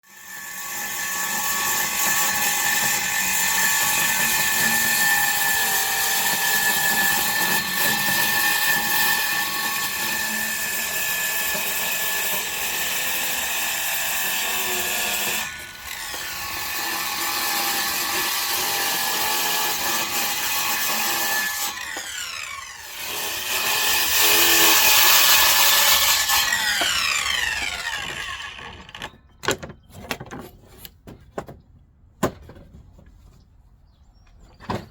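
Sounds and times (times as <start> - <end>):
power saw cutting wood: 0.1 - 29.2.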